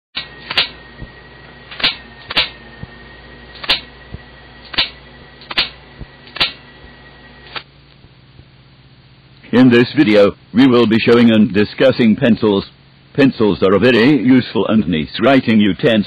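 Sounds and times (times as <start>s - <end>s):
sharp clicks: 0.2s - 0.8s, 1.7s - 3.9s, 4.6s - 6.6s
faint high whine: 0.2s - 16.0s
tape hiss: 0.2s - 16.0s.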